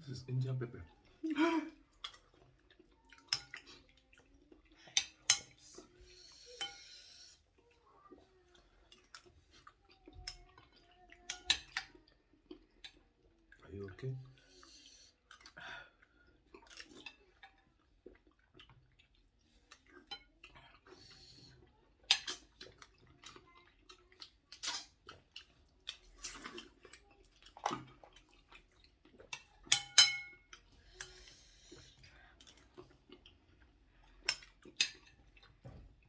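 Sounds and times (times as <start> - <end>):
chewing: 0.8 - 36.0
cutlery clinking against a bowl: 4.9 - 5.6, 6.6 - 6.9, 22.0 - 22.5, 29.3 - 30.6, 34.2 - 35.4.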